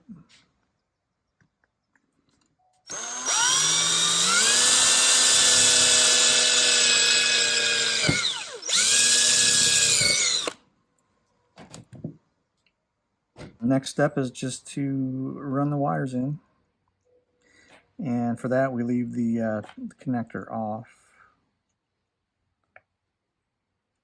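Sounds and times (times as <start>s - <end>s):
electric drill boring: 2.9s - 10.6s.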